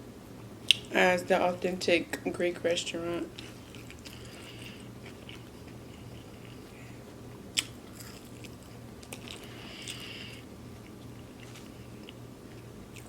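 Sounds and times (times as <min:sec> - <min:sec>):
person chewing food: 0:03.3 - 0:13.0.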